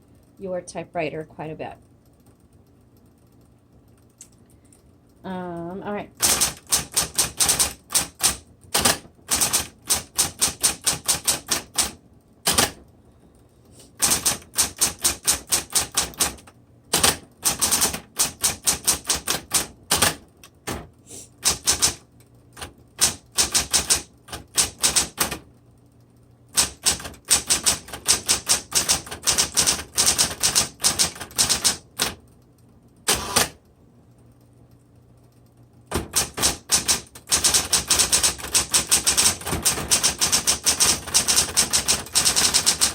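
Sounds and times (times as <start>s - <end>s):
faint low hum: 0.0s - 6.7s
typewriter key strikes: 6.2s - 12.8s, 14.0s - 22.0s, 22.6s - 25.4s, 26.5s - 32.2s, 35.9s - 42.9s.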